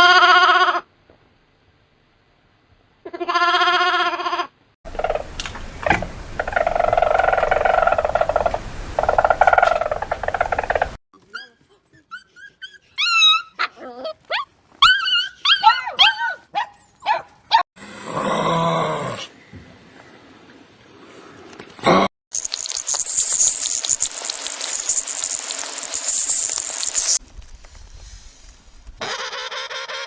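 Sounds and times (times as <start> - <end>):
raspy animal call: 3.1 - 11.0
squeaky animal whines and yips: 11.2 - 17.2.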